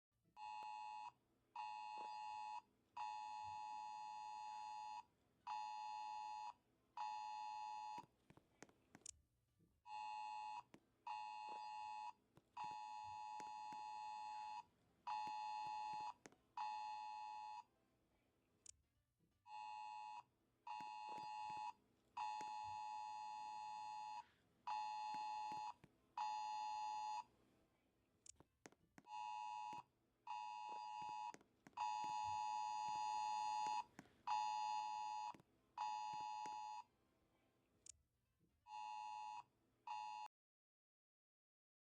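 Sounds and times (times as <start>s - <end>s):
phone alarm beeping: 9.9s - 17.7s, 19.5s - 27.3s, 29.1s - 36.8s.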